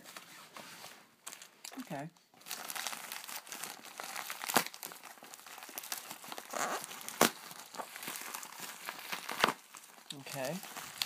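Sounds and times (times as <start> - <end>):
packaging crinkling and rustling: 1.2 - 11.0
packaging snapping: 2.5 - 11.0.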